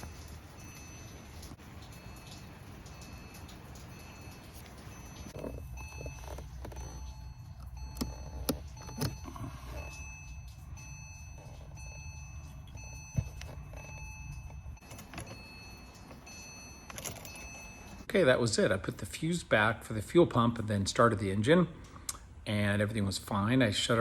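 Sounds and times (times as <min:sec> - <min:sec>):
faint high warning chime: 0:00.0 - 0:19.3.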